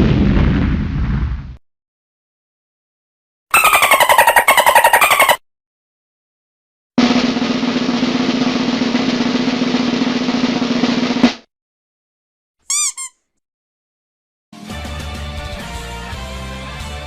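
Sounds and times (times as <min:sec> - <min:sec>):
snare drum roll: 0:07.0 - 0:11.5.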